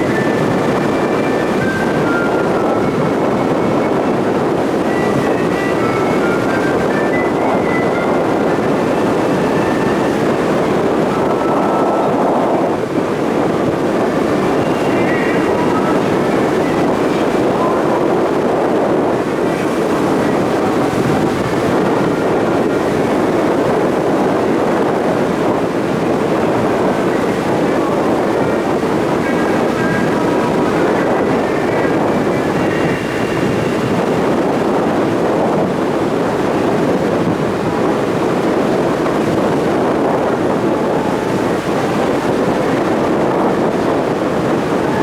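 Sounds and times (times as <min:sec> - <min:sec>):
ferry engine drone: 0:00.0 - 0:45.0
rushing water: 0:00.0 - 0:45.0
rushing wind: 0:00.0 - 0:45.0.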